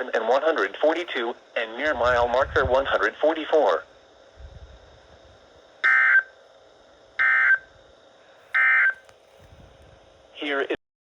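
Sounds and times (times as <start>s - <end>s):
shrill digital data tones: 5.8s - 6.3s, 7.2s - 7.7s, 8.6s - 9.0s.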